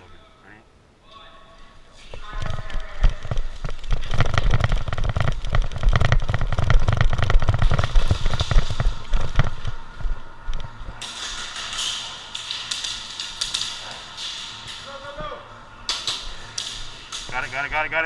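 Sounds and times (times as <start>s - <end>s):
low thumps: 2.9s - 11.0s.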